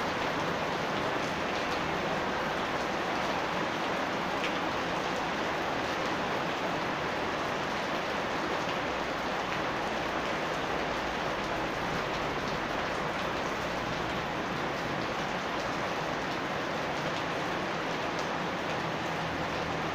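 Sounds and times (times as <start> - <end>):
steady rain hiss: 0.0 - 19.9.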